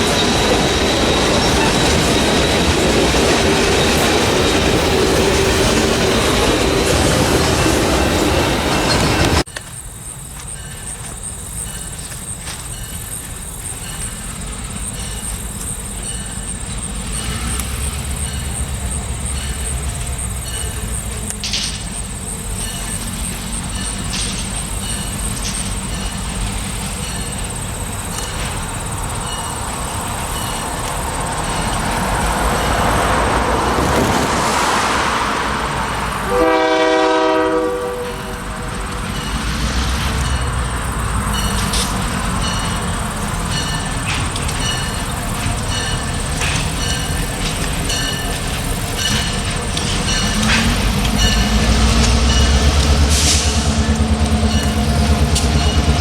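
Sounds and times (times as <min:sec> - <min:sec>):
diesel locomotive engine rumble: 0:00.0 - 0:56.0
rail noise: 0:00.0 - 0:56.0
train horn blast: 0:36.2 - 0:38.5.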